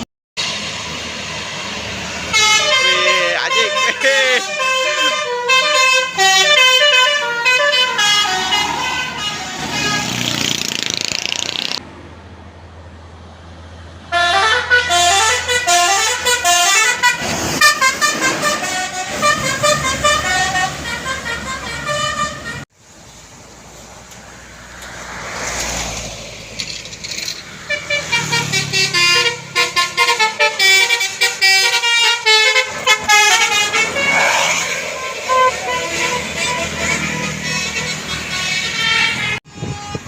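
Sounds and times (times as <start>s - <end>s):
bus musical horn melodies: 2.2s - 10.4s, 14.1s - 22.7s, 27.6s - 40.0s.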